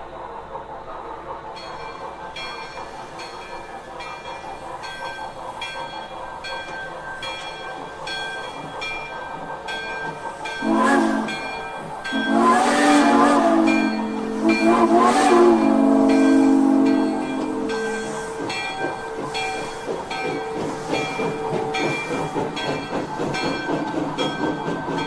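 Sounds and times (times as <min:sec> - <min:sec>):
model steam locomotive chuffing: 0:00.0 - 0:25.0
steam whistle: 0:10.6 - 0:11.5, 0:12.1 - 0:18.5.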